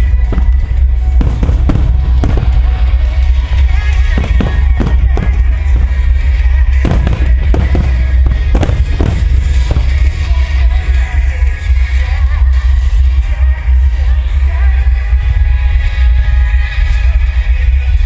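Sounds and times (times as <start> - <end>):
fireworks bangs: 0.0 - 11.7
loud music: 0.0 - 15.4.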